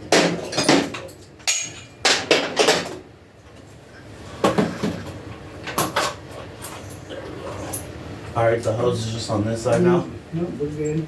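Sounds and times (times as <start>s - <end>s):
metal tools clanking: 0.4s - 2.8s.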